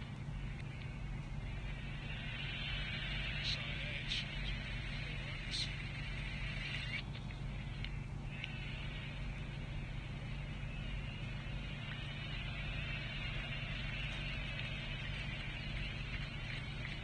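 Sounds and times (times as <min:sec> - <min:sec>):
low electrical hum: 0:00.0 - 0:17.0
faint claps or clicks: 0:00.4 - 0:01.4, 0:06.6 - 0:08.7, 0:11.2 - 0:17.0
crowd hubbub: 0:10.9 - 0:17.0.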